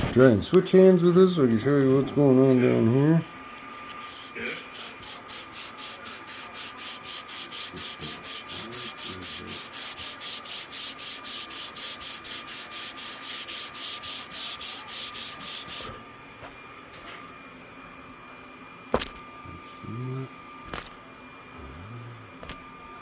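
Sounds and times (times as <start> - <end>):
sandpaper rubbing back and forth: 3.0 - 16.0.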